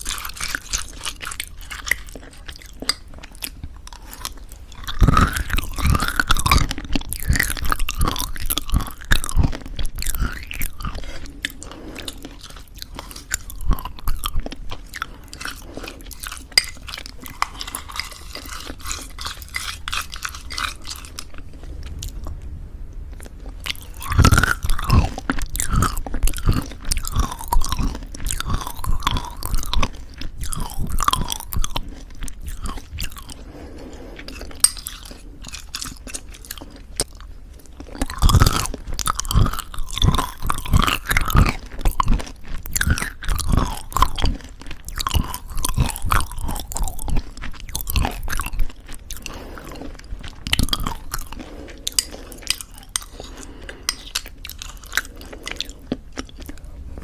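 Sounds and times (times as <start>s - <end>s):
wet mouth sounds: 0.0s - 37.2s
crunchy chewing: 0.0s - 57.0s.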